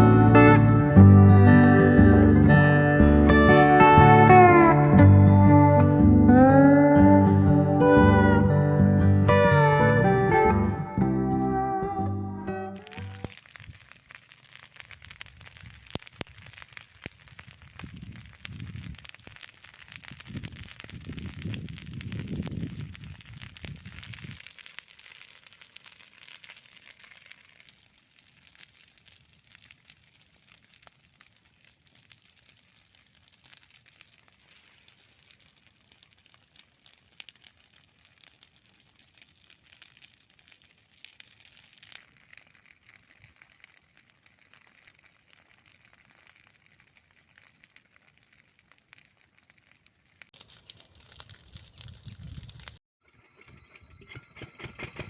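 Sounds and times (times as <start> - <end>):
dry corn leaves crackling and rustling: 12.8 - 52.8.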